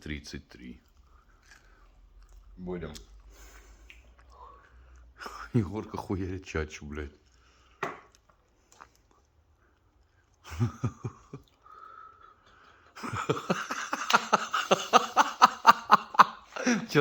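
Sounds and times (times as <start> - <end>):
man laughing: 10.5 - 11.4, 13.0 - 17.0.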